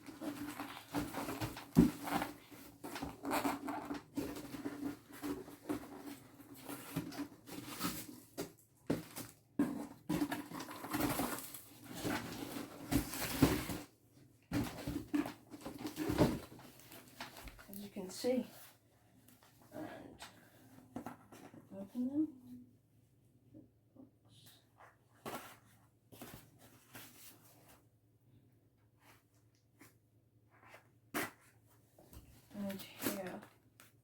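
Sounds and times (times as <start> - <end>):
cardboard packing rustling: 0.0 - 18.8.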